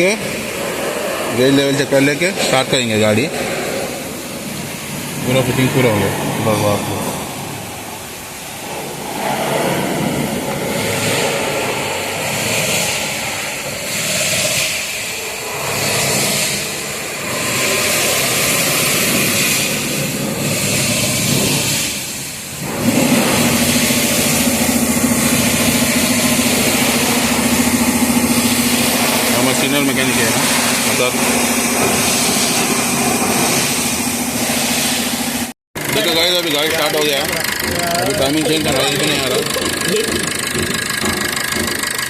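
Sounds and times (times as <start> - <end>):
diesel engine cranking: 10.7 - 42.0
diesel engine idling: 22.2 - 42.0.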